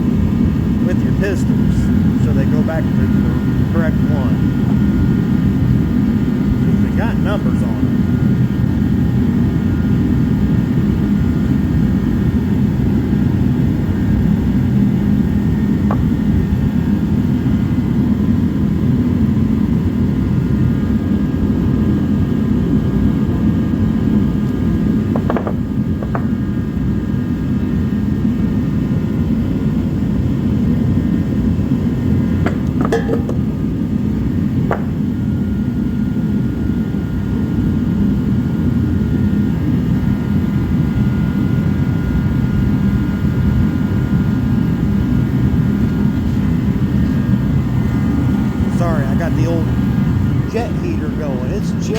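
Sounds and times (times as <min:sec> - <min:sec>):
jet heater rushing: 0:00.0 - 0:20.9, 0:30.5 - 0:37.6, 0:38.7 - 0:51.9
faint steady whine: 0:00.0 - 0:51.9
sharp clicks and clinks: 0:32.5 - 0:33.4.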